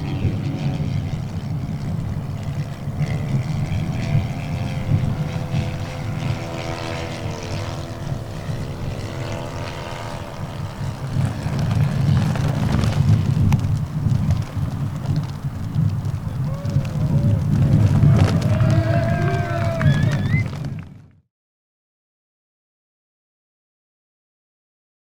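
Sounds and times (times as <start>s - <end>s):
model plane engine running: 0.0s - 20.9s
wind buffeting microphone: 0.0s - 21.2s.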